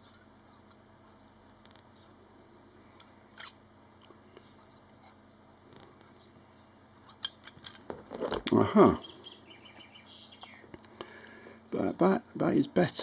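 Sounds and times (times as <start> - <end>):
pliers scraping metal: 3.3 - 3.6.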